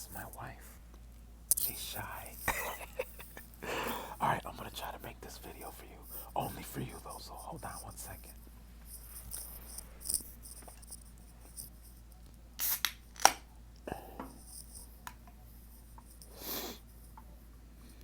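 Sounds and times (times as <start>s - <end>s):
soft breathy burst: 3.6s - 4.3s, 16.2s - 16.9s.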